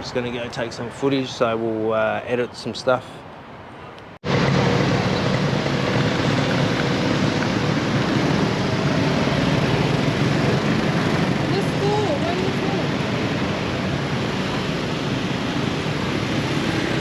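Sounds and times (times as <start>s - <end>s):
loud rushing noise: 4.2s - 17.0s
low engine hum: 4.2s - 17.0s.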